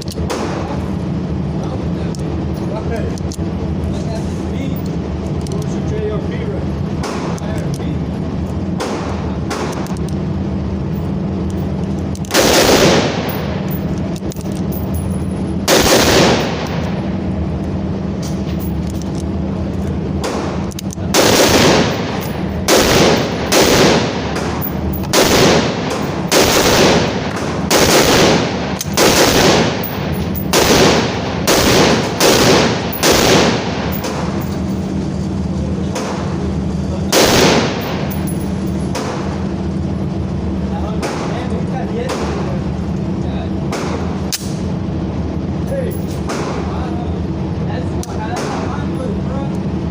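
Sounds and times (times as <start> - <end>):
gunshots with echo: 12.3 - 13.7, 15.7 - 17.1, 20.2 - 34.5, 37.1 - 39.3.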